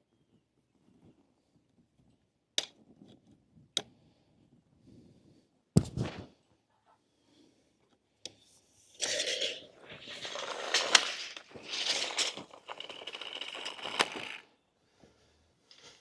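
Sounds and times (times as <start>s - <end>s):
wooden boards scraping: 9.0s - 14.4s.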